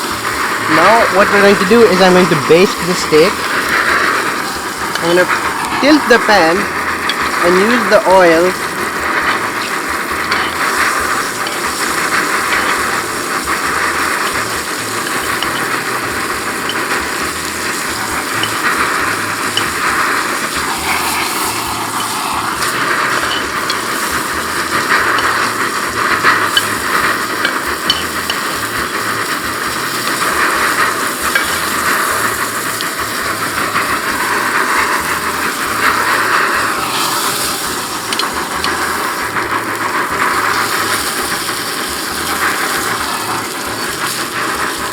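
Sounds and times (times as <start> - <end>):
steak sizzling in butter: 0.0 - 44.9
spoon clicking and scraping pan: 1.7 - 8.4, 9.2 - 32.9, 35.8 - 39.1.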